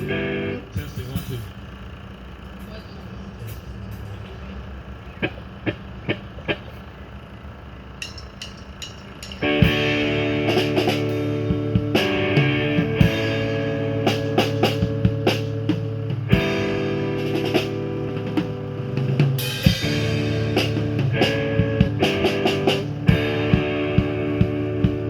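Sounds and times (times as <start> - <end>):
live rock band playing: 0.0 - 1.3, 8.3 - 25.0
sustained guitar chords: 0.0 - 2.9, 7.9 - 25.0.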